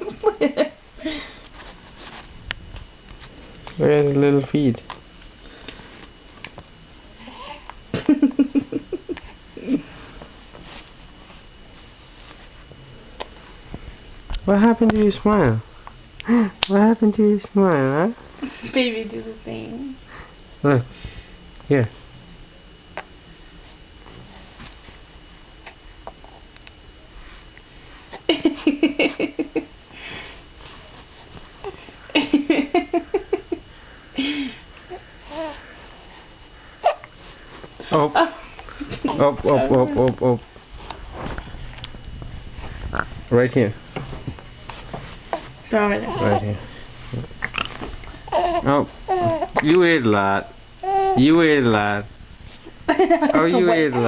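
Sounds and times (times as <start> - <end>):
person laughing: 0.0 - 1.4, 7.9 - 9.9, 32.1 - 33.6, 52.9 - 54.0
baby giggling: 46.0 - 46.6, 48.3 - 49.7.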